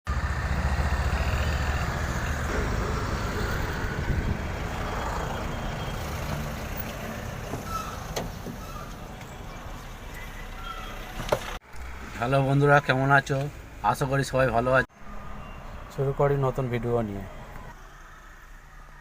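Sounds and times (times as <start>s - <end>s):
car engine rumbling: 0.1s - 19.0s.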